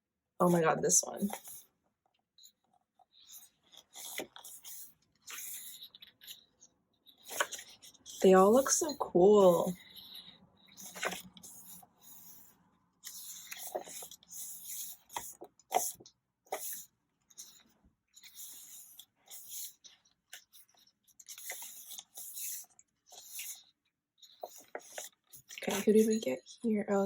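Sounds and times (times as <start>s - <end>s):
book pages turning: 3.2s - 6.5s, 7.1s - 12.5s, 13.1s - 16.8s.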